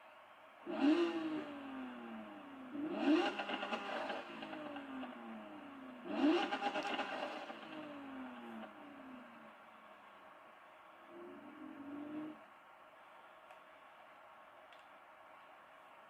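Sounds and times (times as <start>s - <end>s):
car engine revving: 0.6s - 9.6s.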